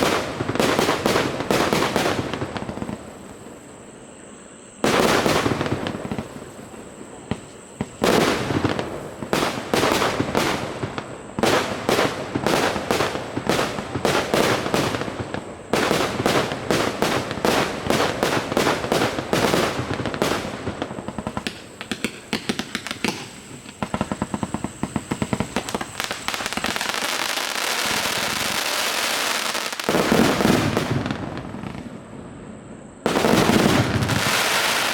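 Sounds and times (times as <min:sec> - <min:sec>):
loud fireworks bangs: 0:00.0 - 0:03.4, 0:04.8 - 0:32.3, 0:33.0 - 0:34.9
fireworks crackle: 0:00.0 - 0:03.8, 0:04.8 - 0:32.1, 0:33.0 - 0:34.9
fireworks cake firing: 0:04.8 - 0:31.9.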